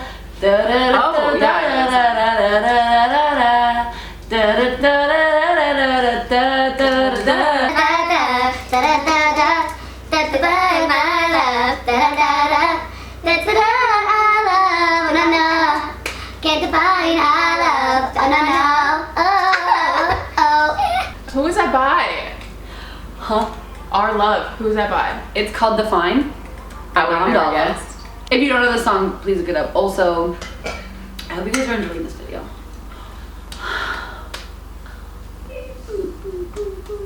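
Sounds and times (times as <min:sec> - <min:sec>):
woman singing wordless melody: 0:00.0 - 0:20.7.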